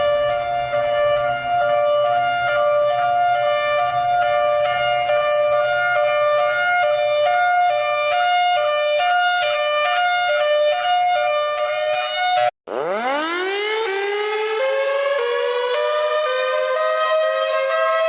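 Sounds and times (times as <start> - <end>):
hi-lo warning siren: 0.0 - 18.0.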